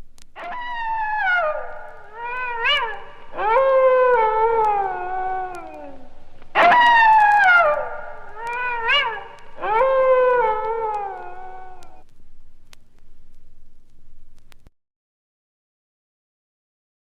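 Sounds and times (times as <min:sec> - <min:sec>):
animal howls: 0:00.4 - 0:12.1.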